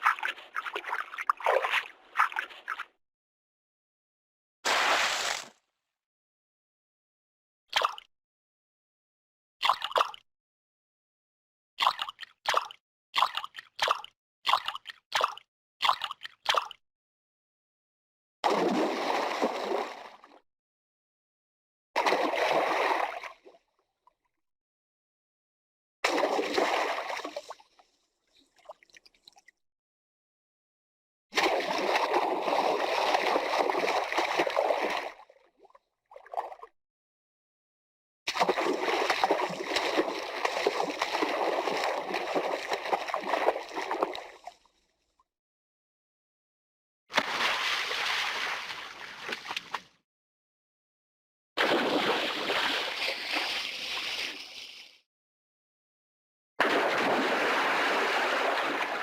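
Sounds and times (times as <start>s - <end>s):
water splashing and sloshing: 0.0s - 2.9s, 4.7s - 5.6s, 11.8s - 16.8s, 18.4s - 20.4s, 22.0s - 23.5s, 26.0s - 29.6s, 31.4s - 36.7s, 38.3s - 44.6s, 47.1s - 50.0s, 51.6s - 55.0s, 56.6s - 59.0s.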